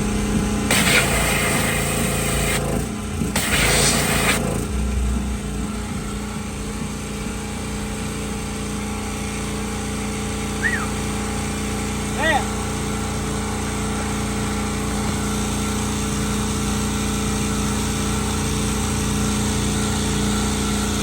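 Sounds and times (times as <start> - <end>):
pressure washer engine running: 0.0 - 21.0
high-pressure spray hissing: 0.7 - 4.7.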